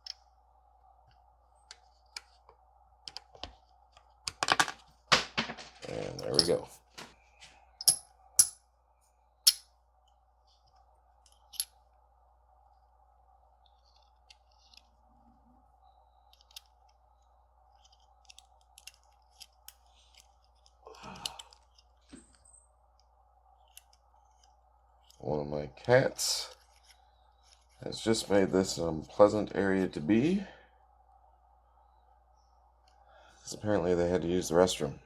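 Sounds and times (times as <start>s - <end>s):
small metal parts clinking: 5.6s - 6.7s, 7.8s - 8.6s.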